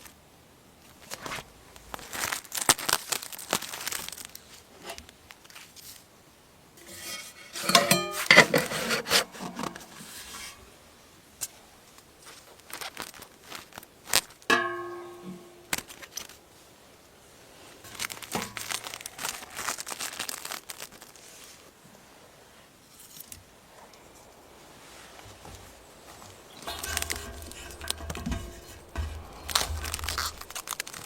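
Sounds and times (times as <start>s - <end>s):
rustling and scraping materials: 6.8s - 10.9s, 12.2s - 14.4s, 17.6s - 21.8s, 22.8s - 31.0s
sharp knocks: 26.6s - 31.0s.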